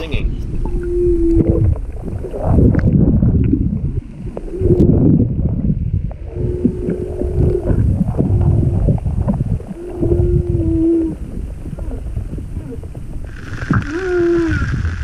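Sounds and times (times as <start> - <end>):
rumbling gurgling water noise: 0.0 - 15.0
whales singing underwater: 0.6 - 2.9, 6.2 - 15.0.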